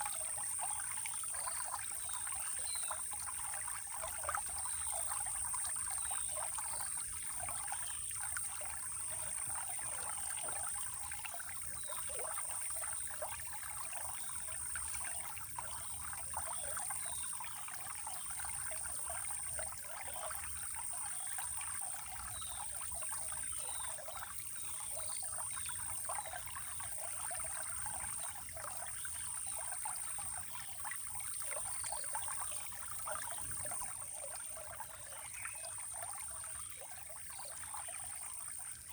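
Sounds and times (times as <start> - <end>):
water trickling and babbling: 0.0 - 38.9.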